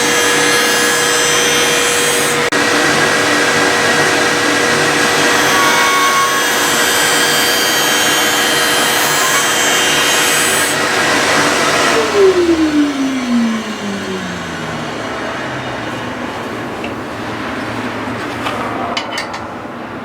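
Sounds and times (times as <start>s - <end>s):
machine motor winding down: 0.0s - 17.8s
blade grinding on sharpening wheel: 3.5s - 12.4s.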